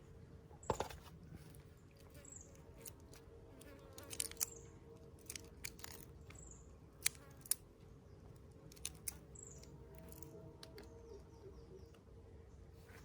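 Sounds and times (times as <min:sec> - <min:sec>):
prawn shells snapping: 0:02.8 - 0:07.6, 0:08.5 - 0:10.9.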